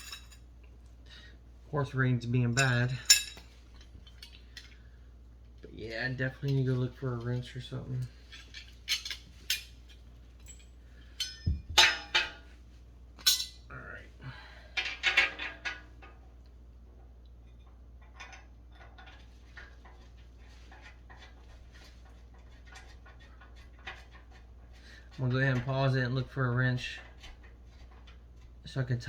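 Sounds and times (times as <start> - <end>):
metal parts clanking: 0.0 - 0.4, 8.1 - 12.4, 13.2 - 13.6.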